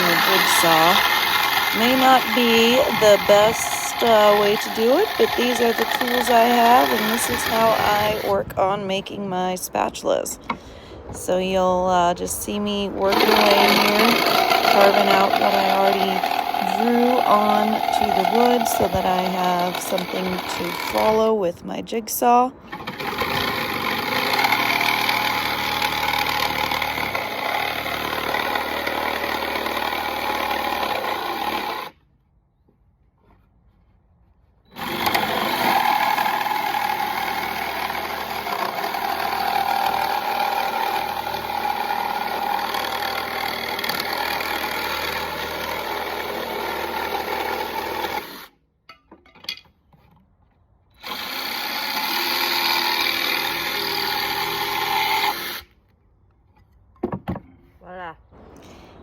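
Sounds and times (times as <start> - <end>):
jigsaw cutting wood: 0.0 - 8.8, 12.7 - 21.4, 22.6 - 32.0, 34.7 - 48.5, 51.0 - 55.7.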